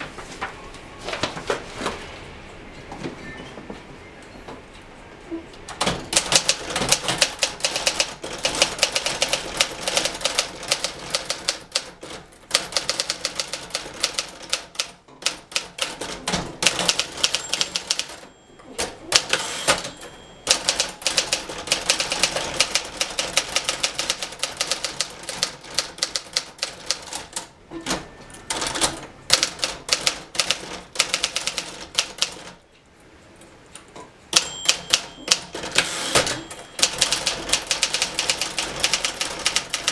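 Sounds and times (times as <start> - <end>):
manual typewriter typing: 5.8 - 32.6, 34.3 - 39.9
typewriter bell ringing: 16.6 - 25.4, 34.4 - 39.9.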